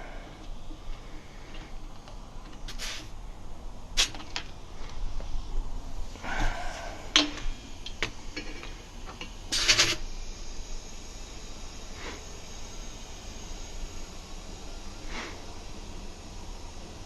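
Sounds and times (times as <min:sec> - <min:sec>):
air hissing at tire valve: 0:00.0 - 0:17.0.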